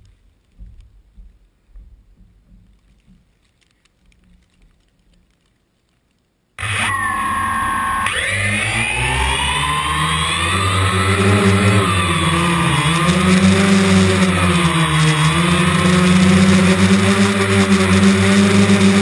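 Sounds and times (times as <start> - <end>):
quadcopter motors whining: 6.6 - 19.0.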